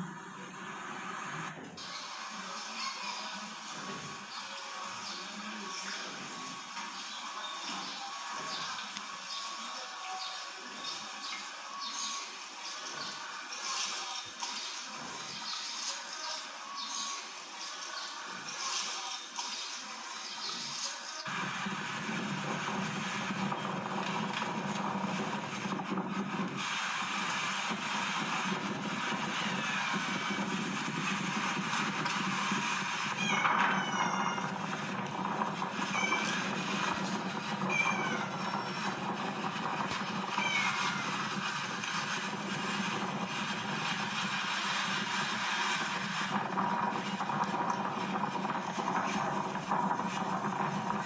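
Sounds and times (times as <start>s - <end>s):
vehicle engine running: 21.3s - 51.0s.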